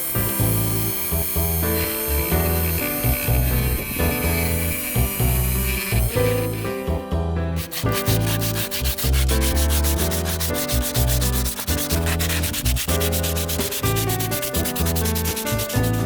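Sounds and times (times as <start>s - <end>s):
bass and chord background music: 0.0s - 16.0s
fast scratching rhythm: 7.6s - 16.0s.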